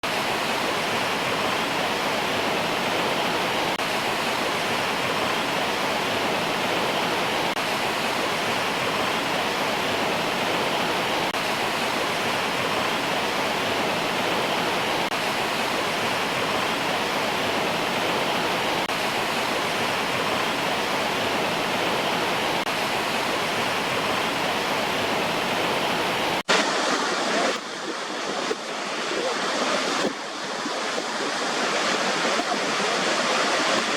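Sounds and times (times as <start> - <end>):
thin uneven rush of water: 0.0 - 33.9
waterfall rushing: 0.0 - 33.9.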